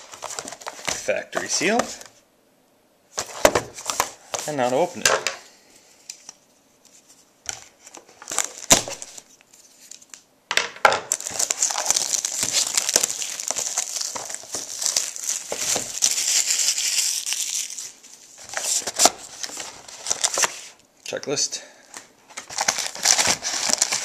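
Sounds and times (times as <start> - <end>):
plastic wrap crinkling: 0.0 - 2.1, 7.5 - 10.2, 11.0 - 20.8, 21.8 - 24.0.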